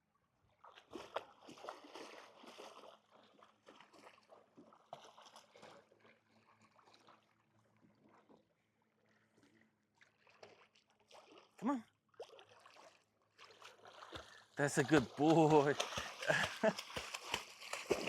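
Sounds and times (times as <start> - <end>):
dog splashing in water: 0.6 - 7.2, 10.1 - 18.0.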